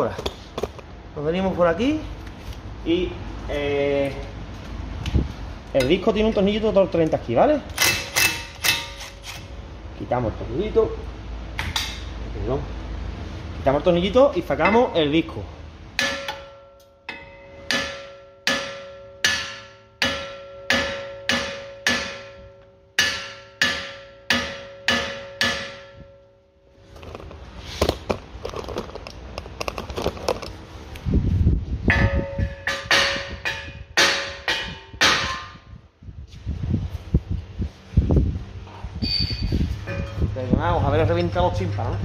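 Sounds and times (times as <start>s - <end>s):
hammer striking ringing brake disc: 14.6s - 15.2s, 15.9s - 26.7s, 31.9s - 35.6s, 39.2s - 40.3s.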